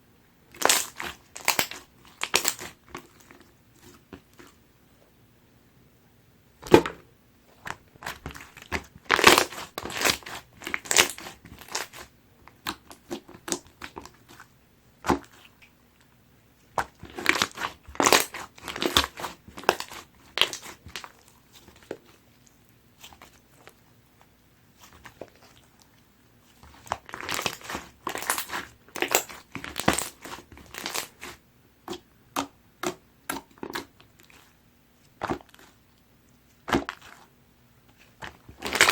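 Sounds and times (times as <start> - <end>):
slime popping and crackling: 0.5 - 3.1, 7.7 - 14.2, 16.8 - 22.0, 26.7 - 31.4, 38.2 - 38.9.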